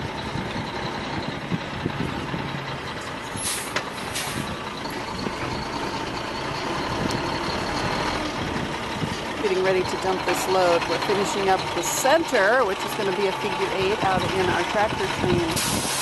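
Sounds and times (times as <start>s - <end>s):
truck engine running: 0.0s - 16.0s
air hisses: 15.6s - 16.0s.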